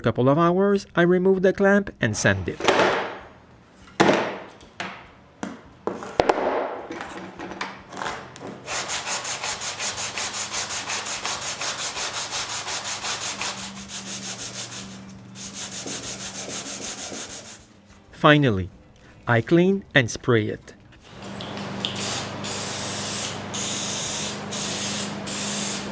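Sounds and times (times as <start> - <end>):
rhythmic sanding of wood: 8.6 - 17.7.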